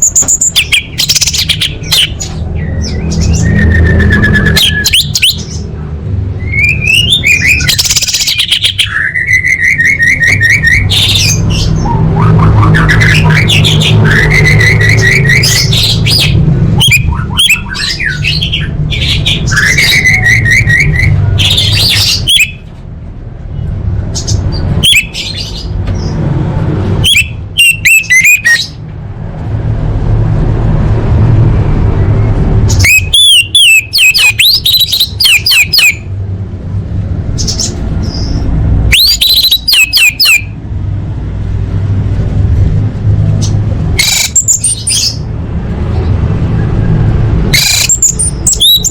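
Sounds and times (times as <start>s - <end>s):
bird singing whistled phrases: 6.4s - 15.7s, 27.1s - 28.7s, 32.8s - 36.0s.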